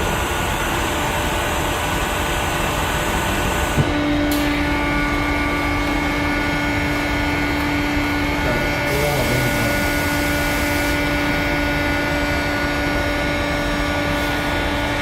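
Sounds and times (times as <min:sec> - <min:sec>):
steady hum: 0:00.0 - 0:15.0
workshop machinery noise: 0:00.0 - 0:15.0.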